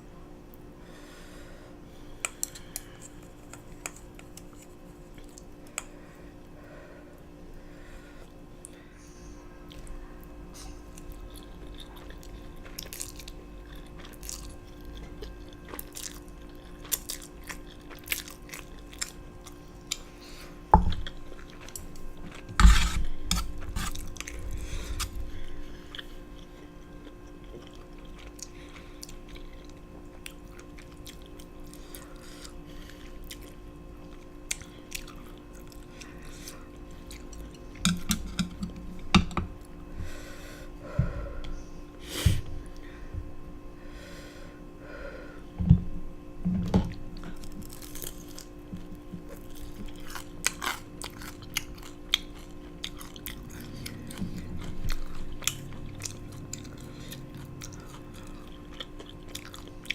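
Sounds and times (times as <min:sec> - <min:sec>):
chewing and wet mouth sounds: 0:02.2 - 0:06.0, 0:09.6 - 0:39.0, 0:46.9 - 0:59.9.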